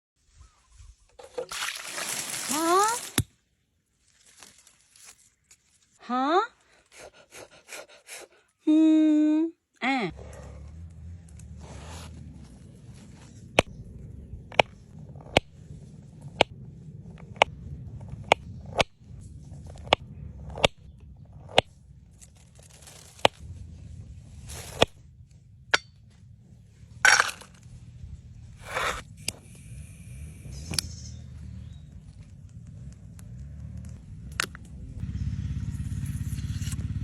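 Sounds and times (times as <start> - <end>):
scrape or rustle: 4.0 - 6.0, 11.4 - 13.4, 22.2 - 24.8.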